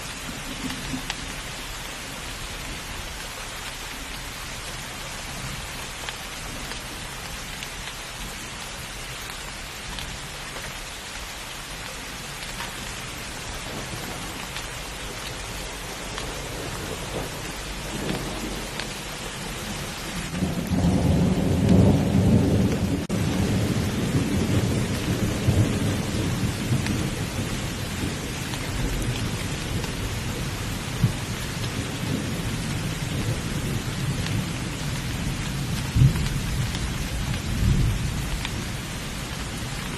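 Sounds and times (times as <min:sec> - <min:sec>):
heavy rain: 0:00.0 - 0:39.9
rolling thunder: 0:15.4 - 0:39.8.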